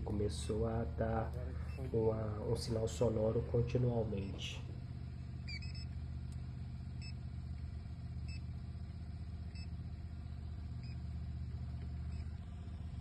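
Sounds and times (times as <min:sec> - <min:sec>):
low machine hum: 0:00.0 - 0:13.0
leak detector short beeps: 0:04.2 - 0:04.5, 0:05.4 - 0:05.9, 0:07.0 - 0:07.2, 0:08.2 - 0:08.5, 0:09.5 - 0:09.7, 0:10.8 - 0:11.0.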